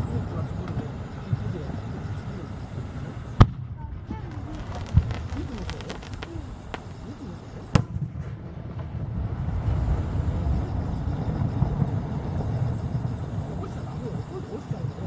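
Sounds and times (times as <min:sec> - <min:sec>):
fireworks rumble and crackling: 0:00.0 - 0:15.0
firework pop: 0:04.3 - 0:08.0
firework shell burst: 0:04.3 - 0:08.0.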